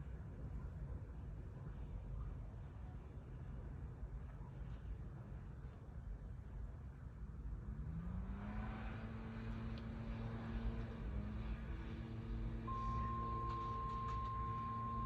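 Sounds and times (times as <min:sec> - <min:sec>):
distant warning sirens: 0:11.8 - 0:15.0
higher steady siren tone: 0:12.6 - 0:15.0.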